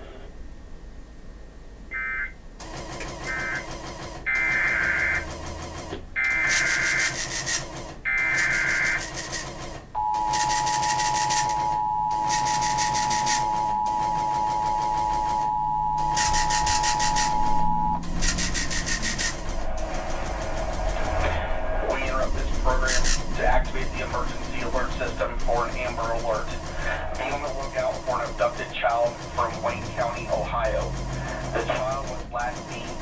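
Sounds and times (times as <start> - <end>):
digital data tone bursts: 1.9 - 2.4, 3.2 - 3.6, 6.2 - 7.4, 8.1 - 9.4, 10.0 - 33.0
two-tone attention signal: 1.9 - 2.4, 10.0 - 26.4.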